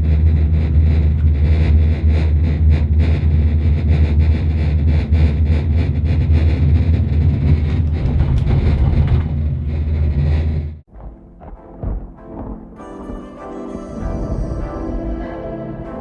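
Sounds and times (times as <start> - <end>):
electronic dance music: 11.8 - 16.0.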